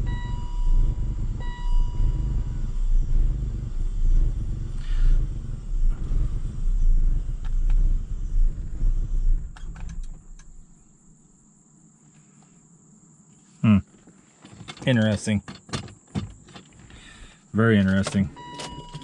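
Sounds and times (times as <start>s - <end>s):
car engine running roughly: 0.0s - 10.9s.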